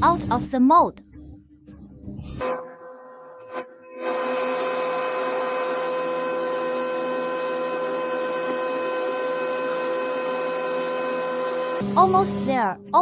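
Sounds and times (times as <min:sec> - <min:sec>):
small electric motor whining: 0:04.0 - 0:11.8.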